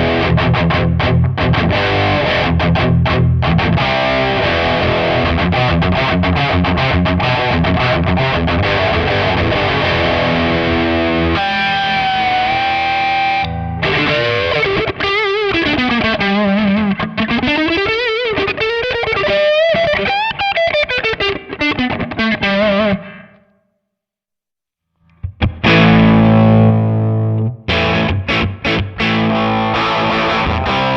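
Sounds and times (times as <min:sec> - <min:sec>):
distorted electric guitar: 0:00.0 - 0:23.5, 0:25.1 - 0:30.9.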